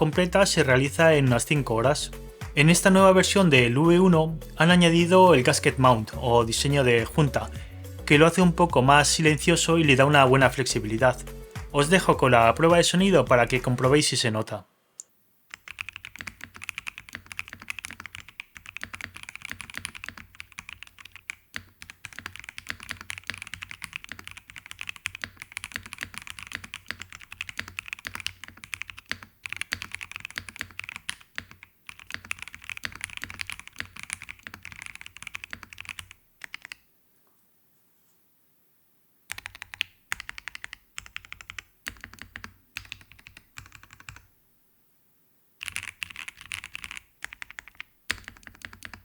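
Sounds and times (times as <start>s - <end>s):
typing on mechanical keyboard: 15.5s - 36.8s, 39.3s - 44.3s, 45.6s - 49.0s.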